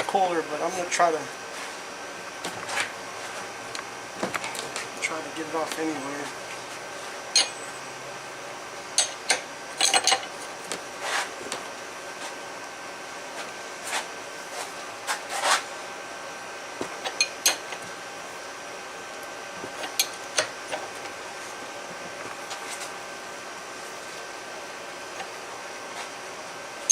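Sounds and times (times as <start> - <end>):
faint steady hum: 0.0 - 26.9
hand tools clinking on metal: 7.3 - 7.7.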